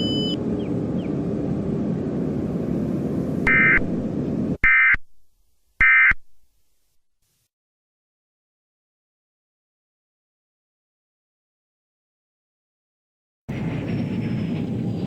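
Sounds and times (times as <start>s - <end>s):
digital data tones: 0.0s - 0.4s, 3.5s - 3.9s
low rumbling noise: 0.0s - 4.6s, 13.5s - 15.0s.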